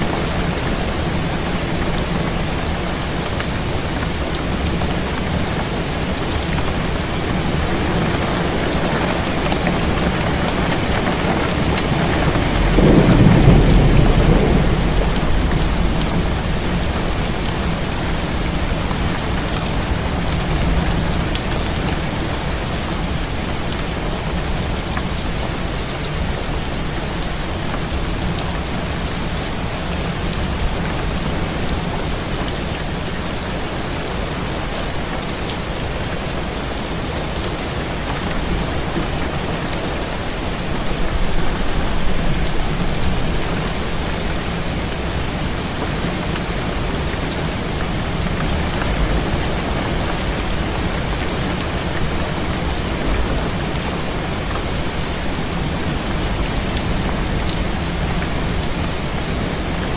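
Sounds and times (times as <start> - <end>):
heavy rain on a window: 0.0 - 59.9
deep roll of thunder: 9.4 - 19.8.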